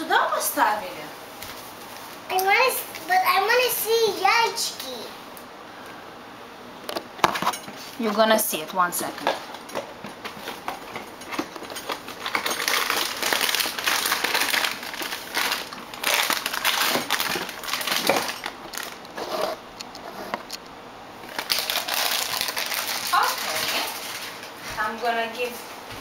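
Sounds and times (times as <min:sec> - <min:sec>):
packaging crinkling and rustling: 0:09.2 - 0:20.6, 0:21.2 - 0:24.6.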